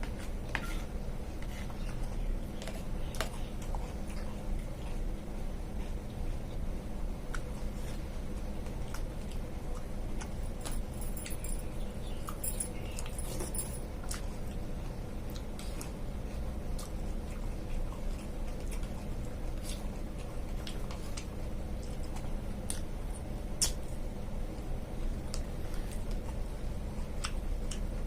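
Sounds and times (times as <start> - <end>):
steady low hum: 0.0 - 28.0
person chewing: 12.1 - 24.0, 27.0 - 28.0.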